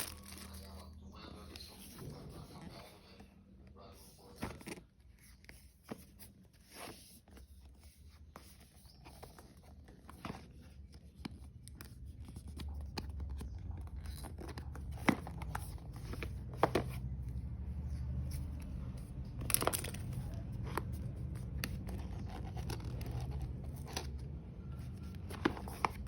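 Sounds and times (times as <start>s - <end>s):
packaging clicks and rustles: 0.0s - 1.0s, 8.6s - 17.4s, 18.0s - 26.0s.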